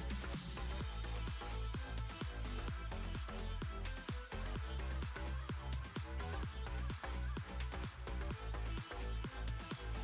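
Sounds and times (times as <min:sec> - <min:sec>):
deep bass line: 0:00.0 - 0:10.0
electronic dance music: 0:00.0 - 0:10.0
steady kick drum: 0:00.0 - 0:10.0.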